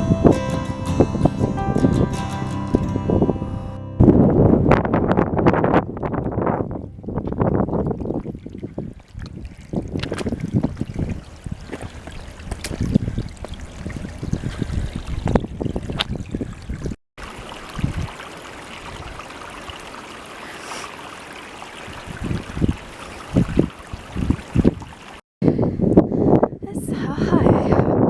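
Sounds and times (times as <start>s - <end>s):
wind buffeting microphone: 4.0s - 17.0s, 21.9s - 28.0s
stream water rushing: 17.2s - 25.2s.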